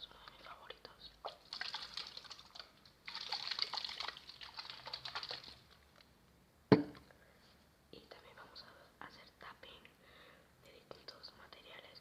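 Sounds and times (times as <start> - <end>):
sharp knock: 6.7 - 7.0.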